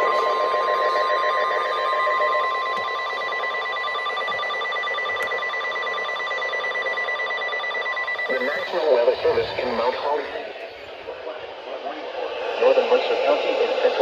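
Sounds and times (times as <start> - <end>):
steady piercing alarm tone: 0.0 - 11.0
radio hiss: 8.2 - 14.0.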